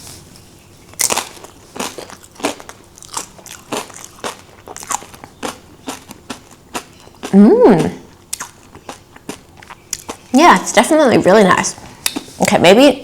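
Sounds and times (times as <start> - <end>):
crunchy chewing: 0.0 - 10.4
cracker crunching: 0.8 - 10.3.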